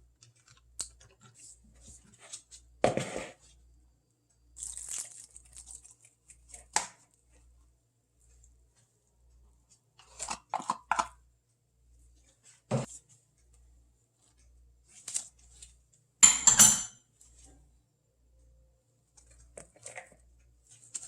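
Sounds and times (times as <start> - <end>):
utensils clattering: 16.2 - 16.9.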